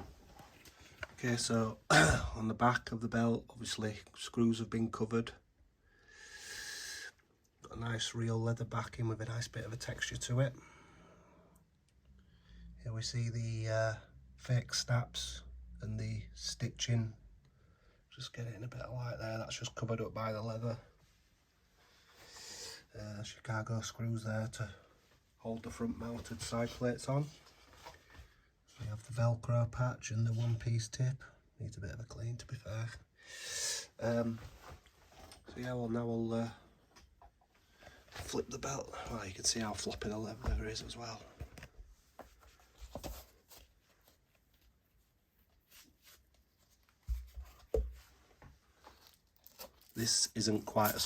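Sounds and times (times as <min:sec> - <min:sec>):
soft nasal in-breath: 0:05.9 - 0:07.2
leather belt rustling and scraping: 0:48.8 - 0:50.0.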